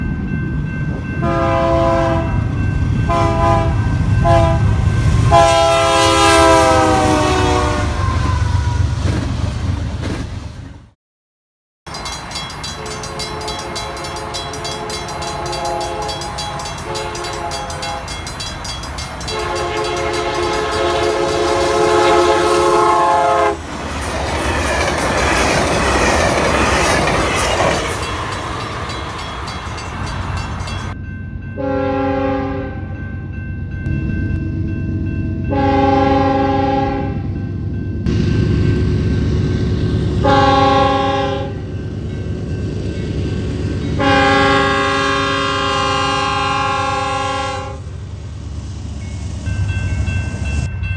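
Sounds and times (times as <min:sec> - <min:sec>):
train wheels rushing past: 0:00.1 - 0:11.0, 0:11.9 - 0:31.0
train horn blasts: 0:01.2 - 0:08.8, 0:12.8 - 0:18.3, 0:19.3 - 0:23.6, 0:31.6 - 0:33.0, 0:34.4 - 0:37.4, 0:40.2 - 0:41.7, 0:44.0 - 0:47.9.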